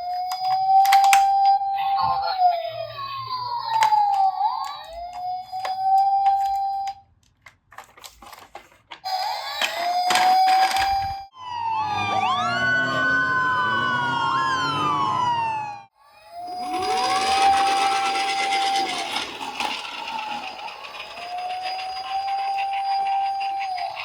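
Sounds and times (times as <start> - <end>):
police sirens wailing: 0.0 - 7.0, 9.1 - 24.0.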